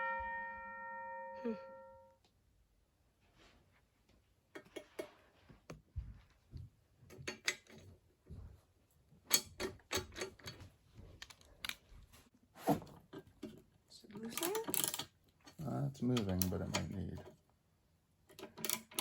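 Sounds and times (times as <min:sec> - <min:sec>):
hand tools clicking on metal: 0:14.3 - 0:17.4, 0:18.3 - 0:19.0.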